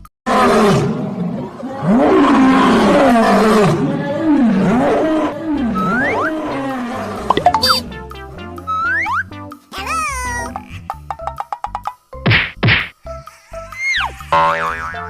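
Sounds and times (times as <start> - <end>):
growling animal roar: 0.3 - 7.3.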